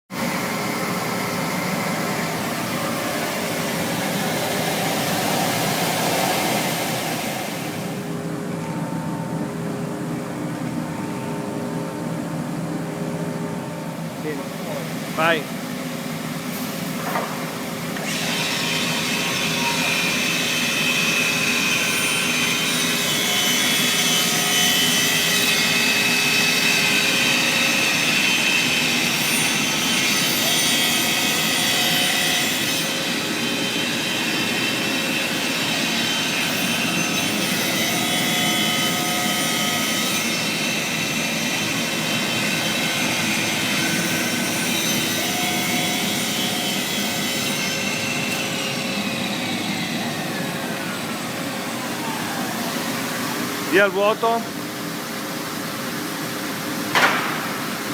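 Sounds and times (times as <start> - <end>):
cnc router cutting plasterboard: 0.2 - 8.1, 17.6 - 54.6.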